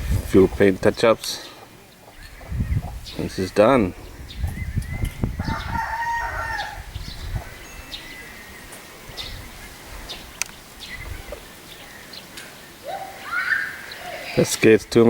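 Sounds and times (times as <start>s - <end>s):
chirps: 1.4s - 14.6s
rooster crowing: 5.4s - 6.9s
faint clicks: 10.4s - 10.6s.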